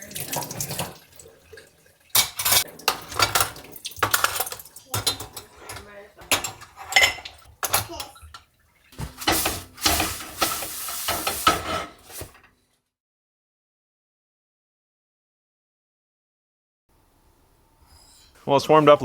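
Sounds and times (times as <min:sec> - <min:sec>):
running water: 0:00.0 - 0:12.4
dishes and cutlery clattering in sink: 0:00.0 - 0:12.5.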